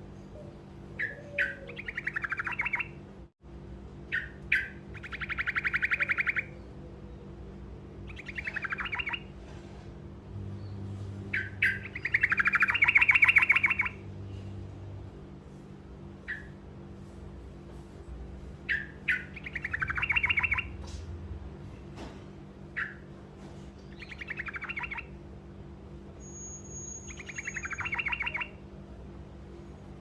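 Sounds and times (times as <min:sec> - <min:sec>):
bird singing rolling song: 0:00.2 - 0:03.0, 0:04.1 - 0:07.4, 0:08.0 - 0:09.3, 0:10.5 - 0:14.1, 0:18.7 - 0:20.8, 0:23.8 - 0:25.2, 0:26.2 - 0:28.6.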